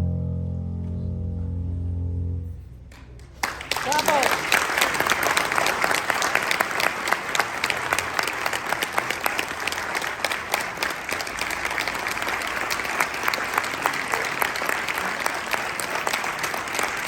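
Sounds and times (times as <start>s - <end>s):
large audience applauding: 3.2s - 17.0s.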